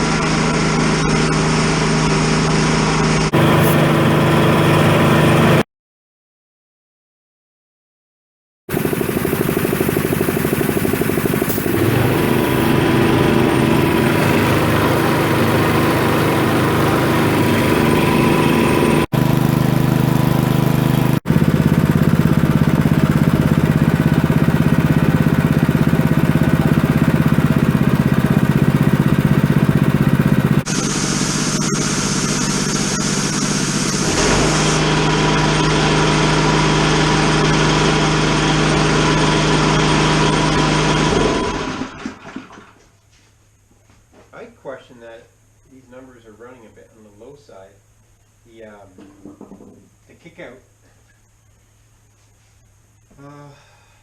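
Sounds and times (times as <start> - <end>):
air compressor engine running: 0.0 - 5.6, 8.7 - 42.0.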